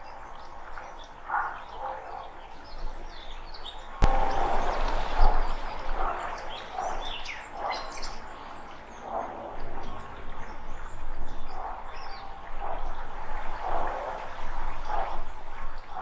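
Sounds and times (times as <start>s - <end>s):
birds chirping: 0.0s - 16.0s
lower bird call: 4.0s - 16.0s.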